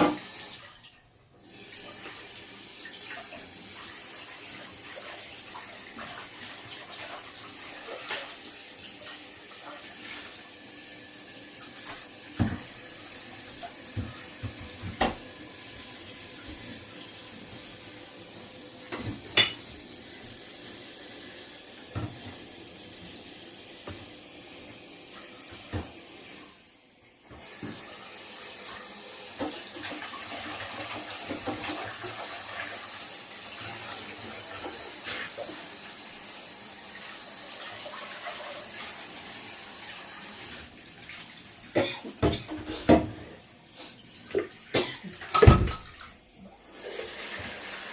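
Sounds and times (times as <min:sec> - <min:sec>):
water running from tap into sink: 0:00.0 - 0:47.9
dishes clinking: 0:18.9 - 0:19.7, 0:44.4 - 0:46.1.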